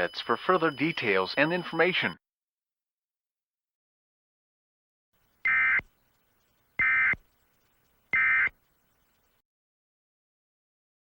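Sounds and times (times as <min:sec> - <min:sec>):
buzzy two-tone data bursts: 0:05.4 - 0:05.9, 0:06.8 - 0:08.9.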